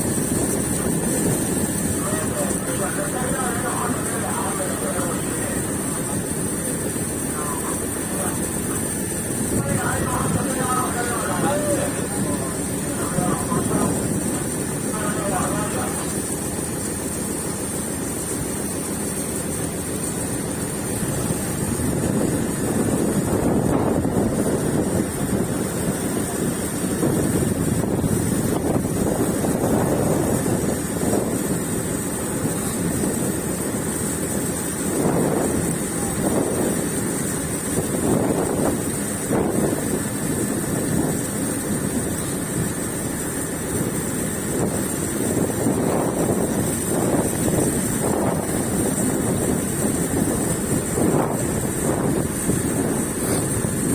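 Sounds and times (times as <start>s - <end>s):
boat engine running: 0.0s - 53.9s
water rushing past hull: 0.0s - 53.9s
wind gusting on microphone: 0.0s - 53.9s.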